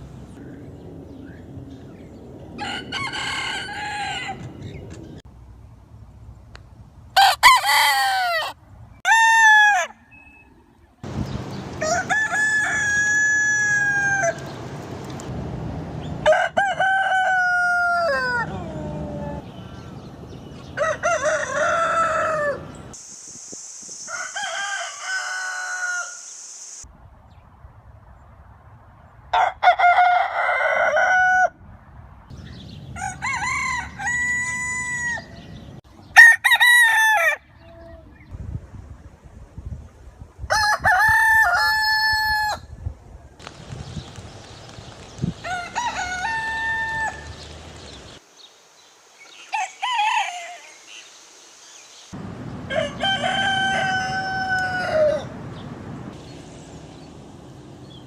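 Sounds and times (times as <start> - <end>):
roosters crowing: 2.6 - 4.8, 7.2 - 10.2, 11.7 - 14.7, 16.1 - 23.0, 24.1 - 26.4, 29.4 - 31.6, 32.8 - 38.0, 40.5 - 42.7, 45.3 - 48.2, 49.4 - 50.8, 52.6 - 55.6
steady high hiss: 22.9 - 26.9, 47.3 - 52.4.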